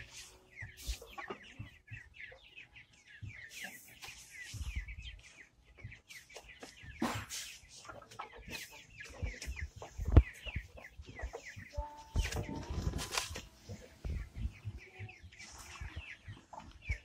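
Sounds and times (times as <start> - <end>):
chickens peeping: 0.0 - 17.0.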